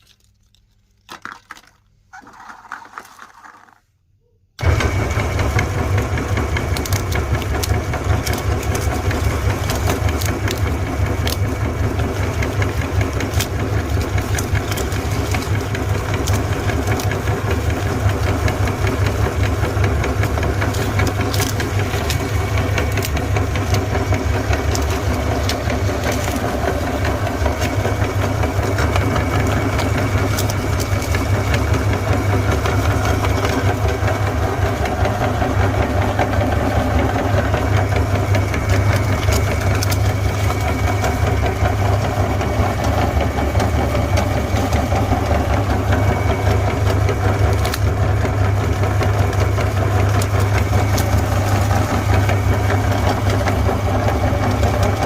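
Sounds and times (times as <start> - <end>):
ice cream cones crunching: 0.0 - 3.8, 5.2 - 55.0
meat grinder motor hum: 4.6 - 55.0
sharp cracks of cone pieces: 6.5 - 26.5.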